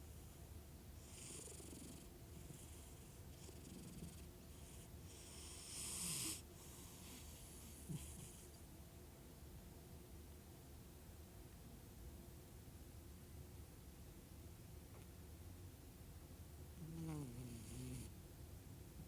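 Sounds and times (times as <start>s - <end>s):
cat snoring softly: 0.0s - 8.6s, 16.8s - 18.2s
cat purring: 1.0s - 8.6s, 16.8s - 18.1s.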